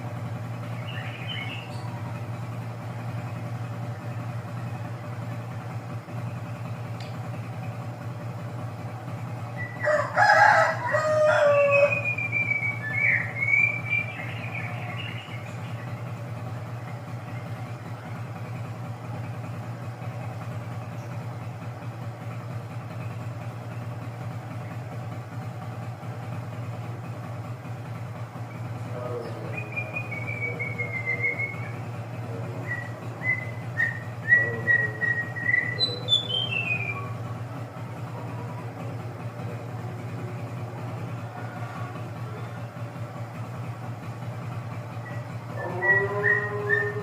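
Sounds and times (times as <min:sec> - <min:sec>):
higher gliding bird calls: 0:00.0 - 0:47.0
steady low hum: 0:00.0 - 0:47.0
loud drawn-out bird call: 0:00.4 - 0:02.4, 0:09.2 - 0:18.0, 0:27.1 - 0:37.4, 0:44.9 - 0:47.0.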